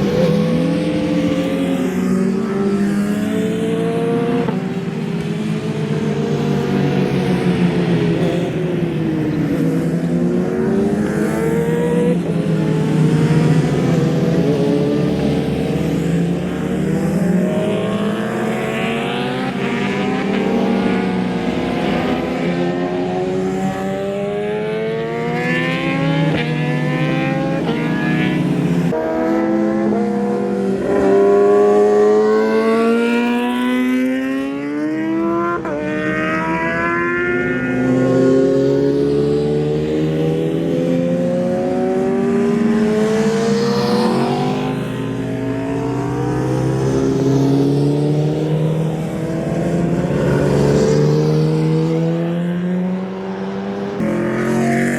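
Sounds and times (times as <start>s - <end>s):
motorcycle engines racing: 0.0s - 54.9s.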